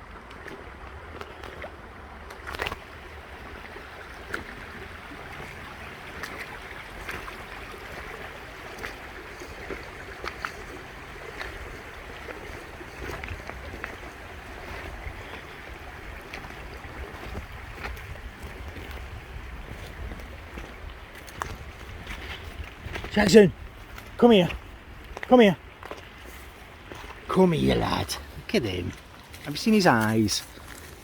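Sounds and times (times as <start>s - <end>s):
river water flowing: 0.0s - 31.0s
wind rumble on microphone: 10.3s - 24.0s.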